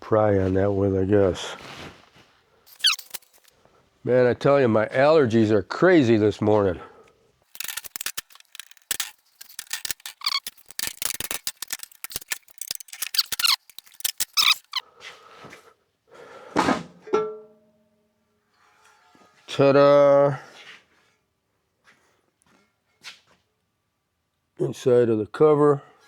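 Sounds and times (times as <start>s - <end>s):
pry tool clicking and scraping: 2.7s - 3.5s, 7.5s - 14.8s.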